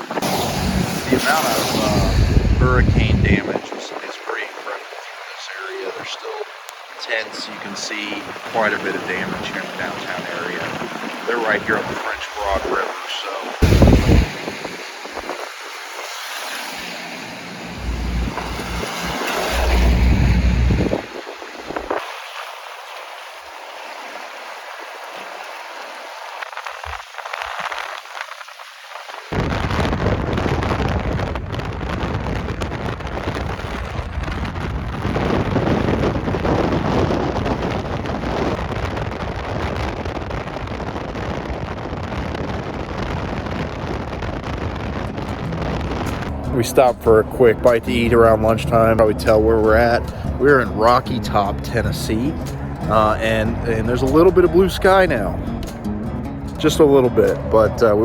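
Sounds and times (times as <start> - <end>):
wind buffeting microphone: 0.0 - 16.6, 17.3 - 23.5, 29.2 - 51.1
vehicle road and wind noise: 0.0 - 58.0
vehicle driving rumble: 0.2 - 3.3, 17.5 - 22.0.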